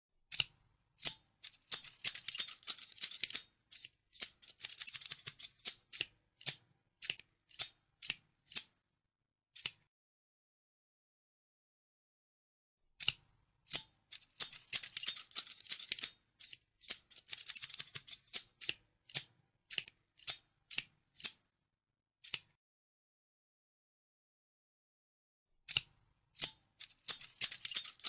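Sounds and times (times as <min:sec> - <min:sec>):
scissors snipping: 0:00.3 - 0:08.7, 0:09.6 - 0:09.9, 0:13.0 - 0:21.4, 0:22.2 - 0:22.6, 0:25.7 - 0:28.0.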